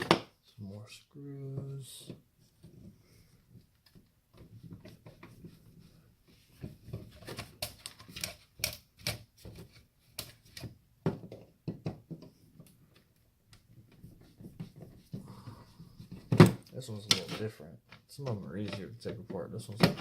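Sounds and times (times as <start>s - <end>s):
clicks and knocks of metal parts: 16.2s - 20.0s.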